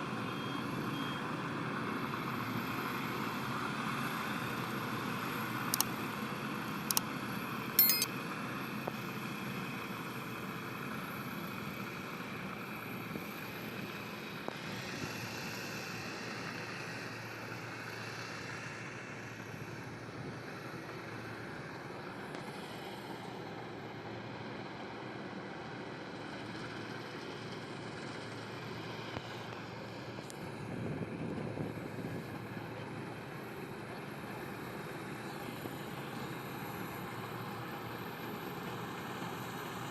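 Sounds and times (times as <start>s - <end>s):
sharp clicks: 7.8s - 8.1s.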